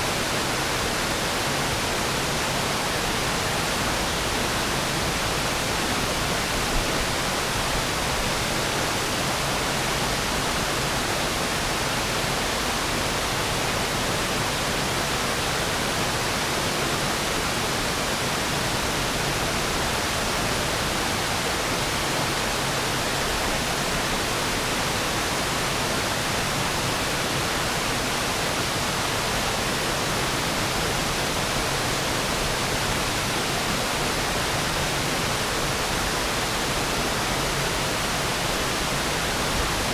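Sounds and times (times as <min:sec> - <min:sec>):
waterfall pouring and splashing: 0:00.0 - 0:39.9.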